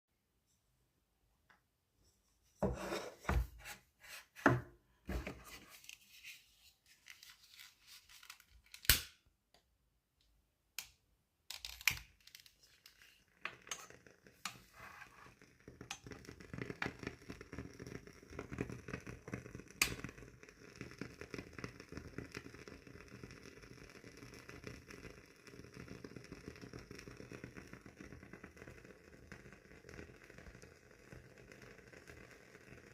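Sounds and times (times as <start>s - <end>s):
wooden candle wick crackling: 5.1s - 9.1s, 11.5s - 22.6s.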